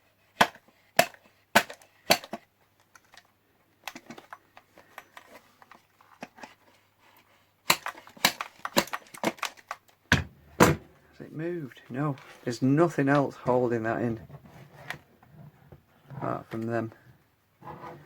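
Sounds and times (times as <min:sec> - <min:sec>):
tool clicking against radio case: 0:00.4 - 0:06.6, 0:07.7 - 0:09.9.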